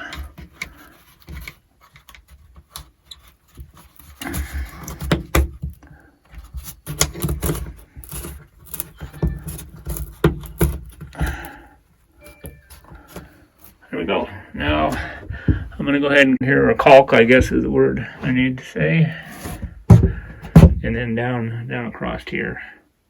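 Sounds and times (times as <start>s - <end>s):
low rumbling bumps: 14.5s - 16.1s, 17.2s - 18.2s, 19.6s - 21.1s.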